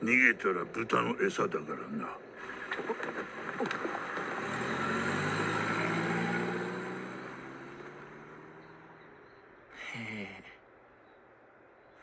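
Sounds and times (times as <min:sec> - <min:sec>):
car engine hum: 0:00.0 - 0:09.7
person sighing: 0:09.7 - 0:10.6.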